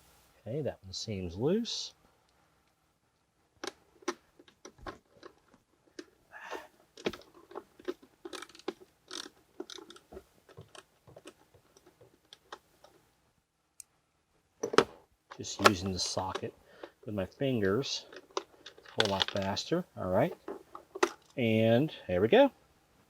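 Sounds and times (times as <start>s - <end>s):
socket clicking and scraping on screw: 7.0s - 13.0s.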